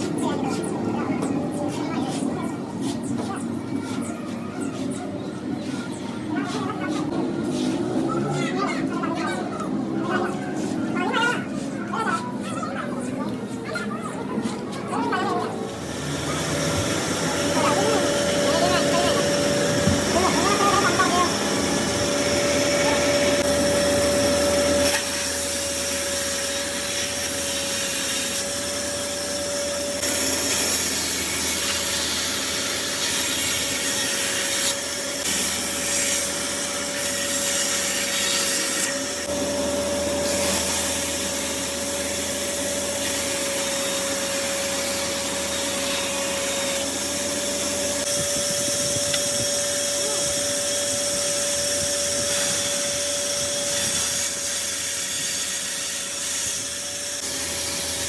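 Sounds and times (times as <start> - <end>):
woodworking machine whine: 0.0 - 58.0
blade cutting wood: 15.4 - 58.0.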